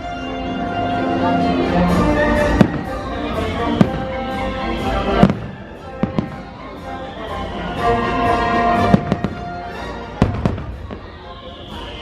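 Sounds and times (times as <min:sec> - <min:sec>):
music: 0:00.0 - 0:12.0
firework bangs: 0:02.4 - 0:04.4, 0:05.1 - 0:06.8, 0:08.8 - 0:12.0.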